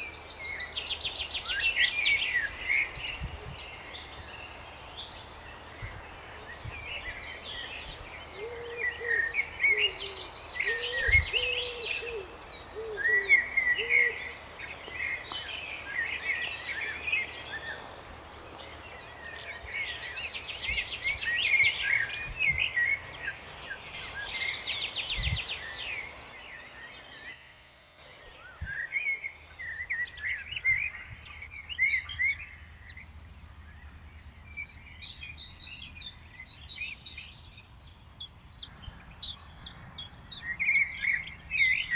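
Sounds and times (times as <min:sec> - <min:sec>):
songbirds chirping and trilling: 0:00.0 - 0:41.9
bird hooting: 0:08.3 - 0:15.3.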